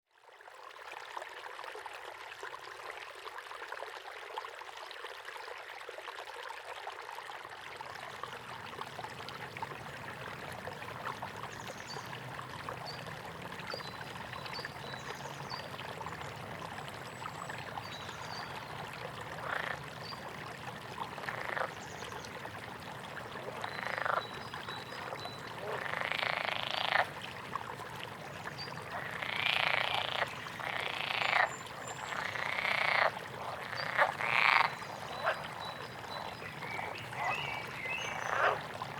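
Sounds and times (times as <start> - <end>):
frogs croaking: 17.7 - 20.3, 21.2 - 22.1, 23.4 - 27.2, 28.6 - 38.9.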